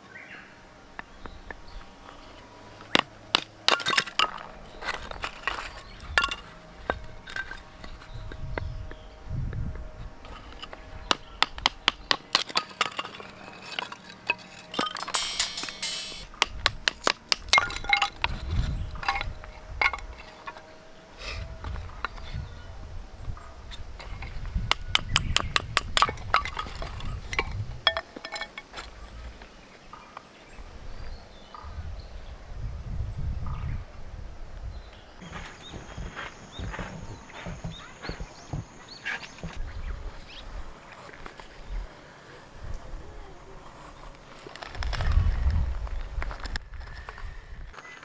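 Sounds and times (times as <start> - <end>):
cookware and utensils clinking: 12.4 - 16.3.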